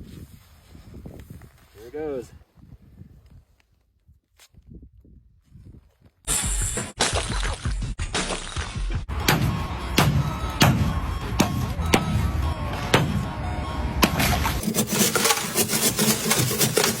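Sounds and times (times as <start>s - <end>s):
background music: 8.7s - 17.0s
ice cracking: 14.6s - 17.0s.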